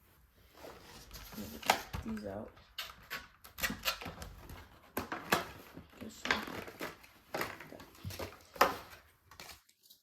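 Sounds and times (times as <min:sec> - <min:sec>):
cardboard rustling: 0:00.2 - 0:02.5.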